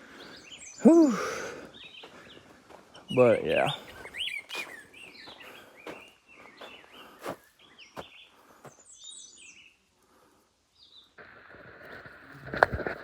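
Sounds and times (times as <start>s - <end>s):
birds chirping: 0.0s - 11.6s
footsteps on gravel: 2.0s - 8.8s.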